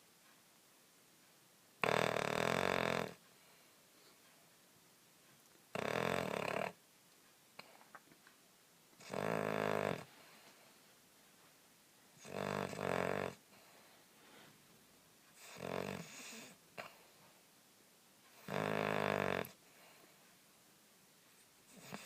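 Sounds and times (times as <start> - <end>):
dog snoring: 1.8 - 3.2, 5.7 - 6.8, 9.0 - 10.1, 12.2 - 13.4, 15.4 - 17.1, 18.3 - 19.6, 21.7 - 22.0.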